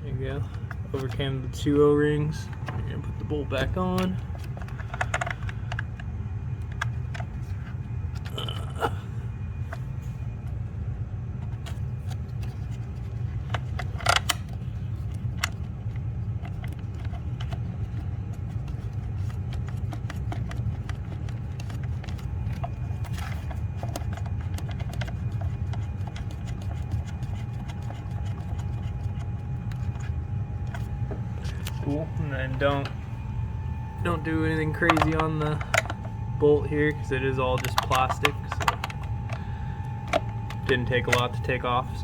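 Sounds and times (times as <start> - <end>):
steady low hum: 0.0 - 42.0.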